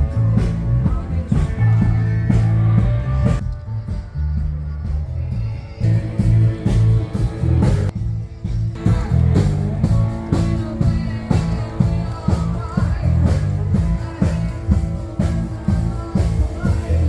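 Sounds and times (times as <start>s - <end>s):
rock music with singing: 0.0s - 17.0s.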